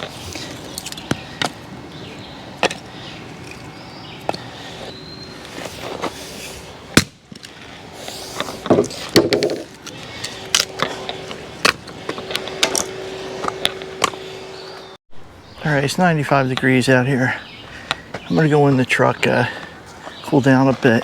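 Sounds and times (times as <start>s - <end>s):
faint steady hum: 0.0s - 21.0s
objects knocking and clattering: 8.7s - 9.7s.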